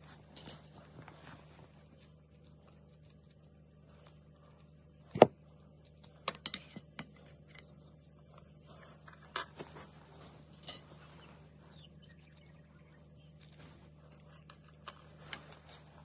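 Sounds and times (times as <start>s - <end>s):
small metal clicks and clinks: 10.5s - 10.9s.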